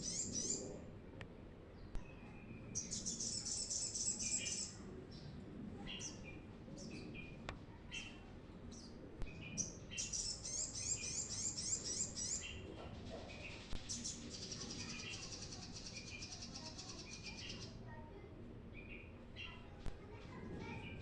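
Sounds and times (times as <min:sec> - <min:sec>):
bird chirps: 0:00.0 - 0:00.8, 0:01.9 - 0:04.8, 0:09.3 - 0:12.7.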